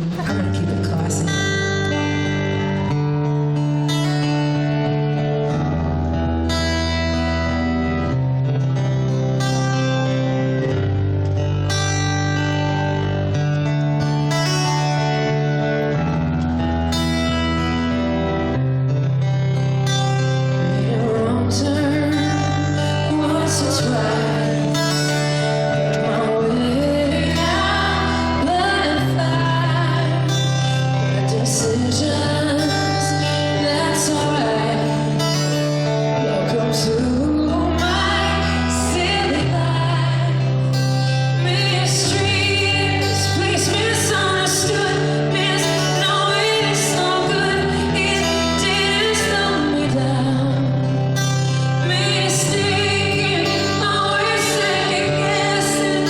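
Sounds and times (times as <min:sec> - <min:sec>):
woman singing: 0:00.0 - 0:02.6, 0:20.5 - 0:56.0
sustained bass notes: 0:00.0 - 0:56.0
live band playing pop ballad: 0:09.6 - 0:56.0.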